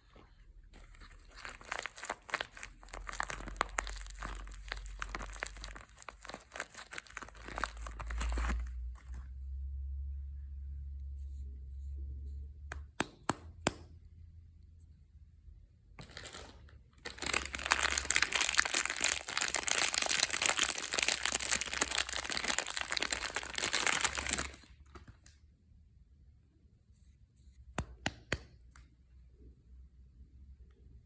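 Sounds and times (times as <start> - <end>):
packaging torn and crinkled: 0.9 - 9.1, 16.0 - 24.8.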